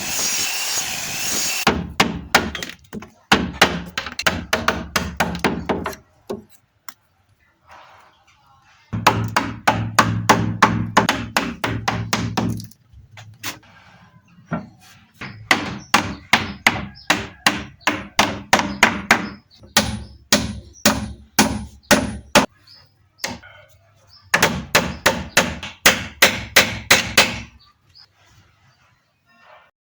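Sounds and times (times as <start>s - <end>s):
hammer striking wood: 1.6s - 6.4s, 9.0s - 12.6s, 15.2s - 22.5s, 24.3s - 27.6s.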